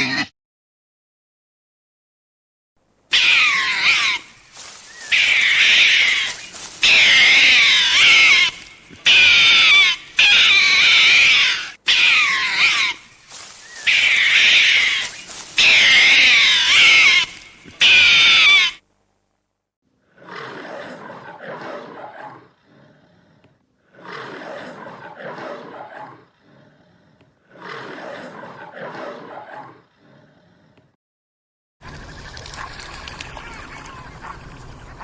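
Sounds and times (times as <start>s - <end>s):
animal calling: 3.1s - 18.8s.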